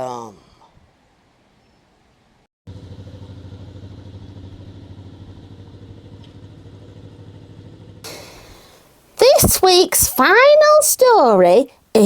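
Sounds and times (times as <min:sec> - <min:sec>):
engine idling with chugging pulse: 0:02.7 - 0:08.7.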